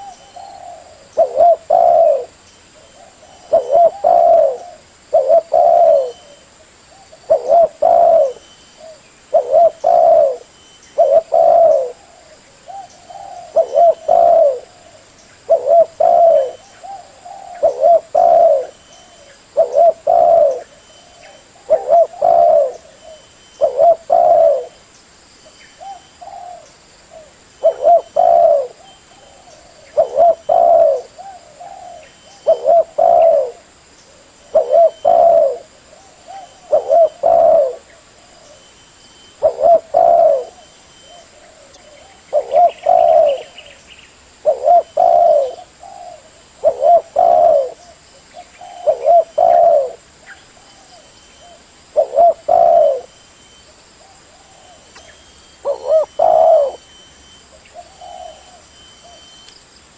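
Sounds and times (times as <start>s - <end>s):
dove cooing: 0.0s - 24.8s, 25.8s - 43.8s, 44.4s - 59.5s.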